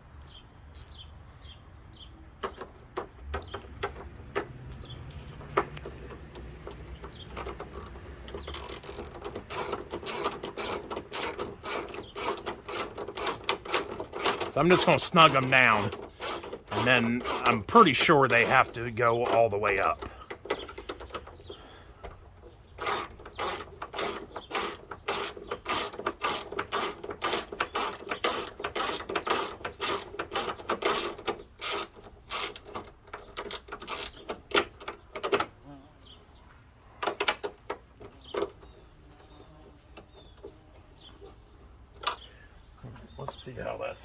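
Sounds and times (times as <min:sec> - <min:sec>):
socket ratchet clicking: 0:00.2 - 0:01.0, 0:05.7 - 0:18.6, 0:22.8 - 0:34.6.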